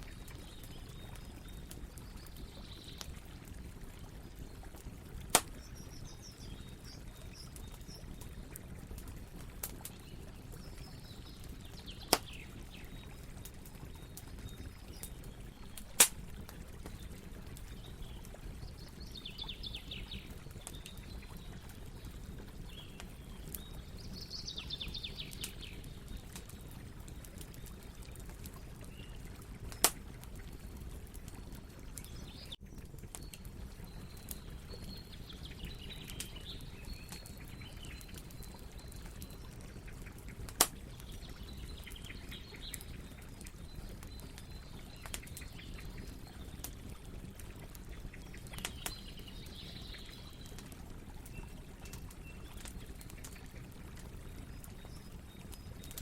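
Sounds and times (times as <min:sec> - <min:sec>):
campfire crackling: 0:00.0 - 0:56.0
fire popping: 0:00.0 - 0:56.0.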